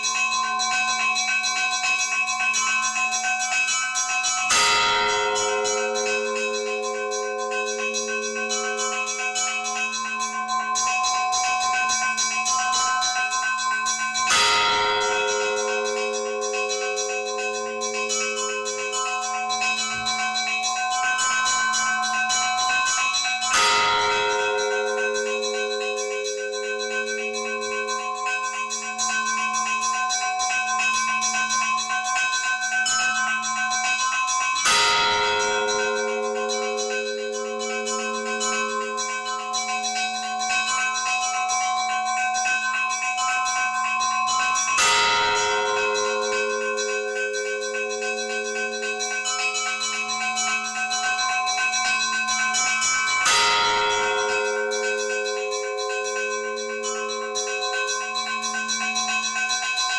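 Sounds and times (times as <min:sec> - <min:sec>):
church bells pealing: 0:14.3 - 0:18.2, 0:23.5 - 0:28.2, 0:34.6 - 0:39.2, 0:44.8 - 0:49.4, 0:53.2 - 0:58.4.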